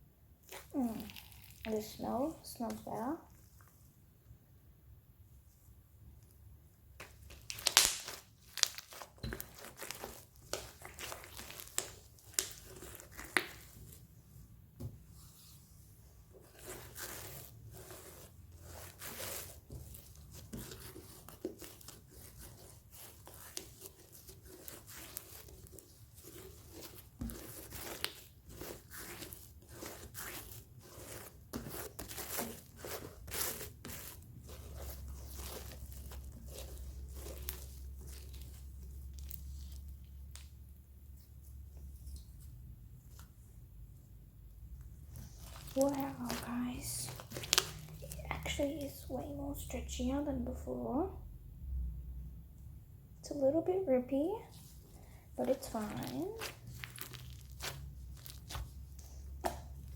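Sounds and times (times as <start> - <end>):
slime crackling and popping: 7.0 - 13.9, 18.6 - 40.6, 45.2 - 48.9, 55.4 - 59.9.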